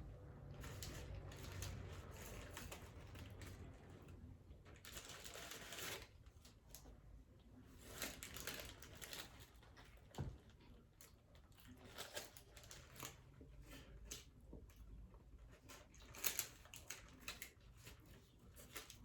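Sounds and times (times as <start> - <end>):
soft clicks and crinkles: 0.5 - 19.0.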